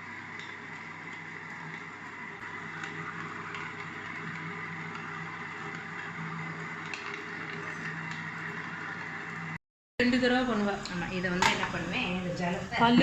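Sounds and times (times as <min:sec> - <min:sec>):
wet grinder motor hum: 0:00.0 - 0:09.6.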